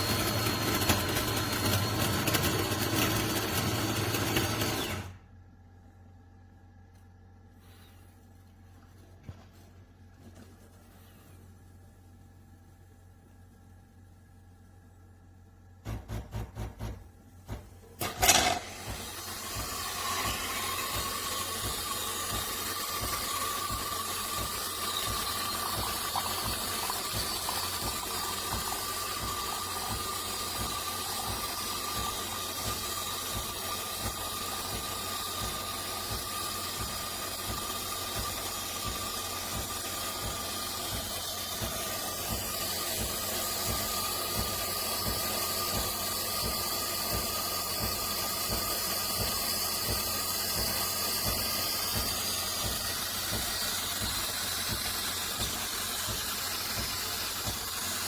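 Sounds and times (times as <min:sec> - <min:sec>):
pump pulsing: 0:00.0 - 0:05.2, 0:15.8 - 0:58.0
faint held whine: 0:05.1 - 0:18.8
espresso machine steam hiss: 0:18.0 - 0:58.0.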